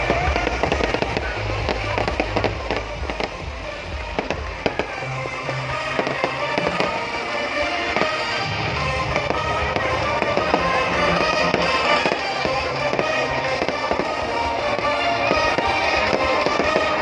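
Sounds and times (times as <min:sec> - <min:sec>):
fireworks bangs and crackling: 0:00.0 - 0:17.0
loud music with heavy bass: 0:00.0 - 0:17.0.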